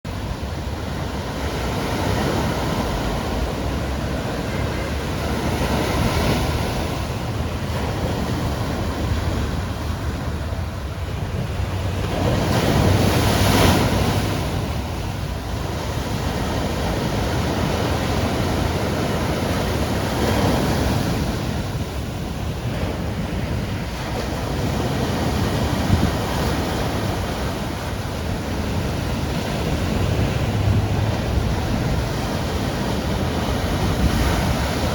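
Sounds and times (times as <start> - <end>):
waves breaking ashore: 0.1 - 34.9.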